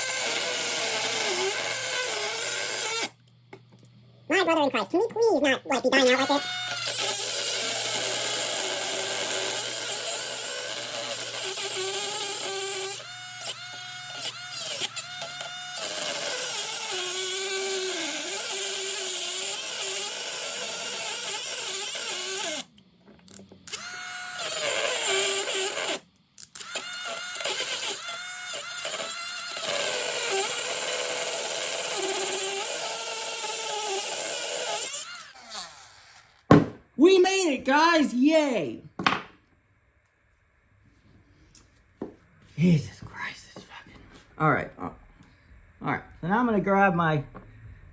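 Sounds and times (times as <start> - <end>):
power tool grinding steel: 0.0 - 3.2, 5.8 - 22.7, 26.6 - 36.3.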